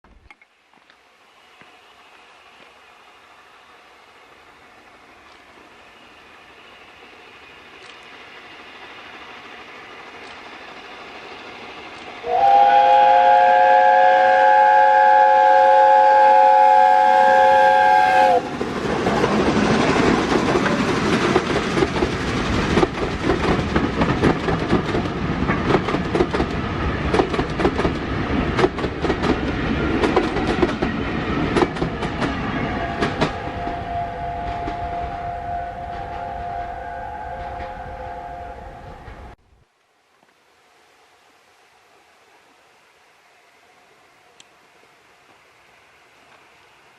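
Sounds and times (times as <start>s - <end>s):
train rumbling past: 0.6s - 39.5s
steam locomotive chime whistle: 12.2s - 18.5s, 32.2s - 39.4s
wheels clattering over rail joints: 18.5s - 33.4s.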